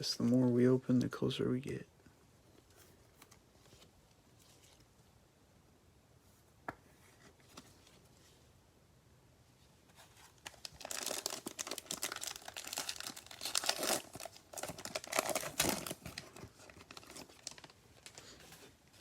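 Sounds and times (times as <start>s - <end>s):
cellophane wrapper tearing and crinkling: 10.4s - 18.3s.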